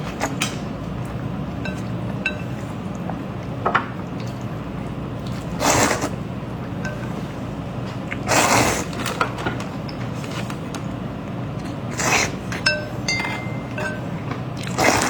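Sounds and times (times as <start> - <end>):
wet eating noise: 0.0 - 15.0
utensils clinking on a dish: 1.6 - 2.7, 6.8 - 7.3, 12.3 - 15.0.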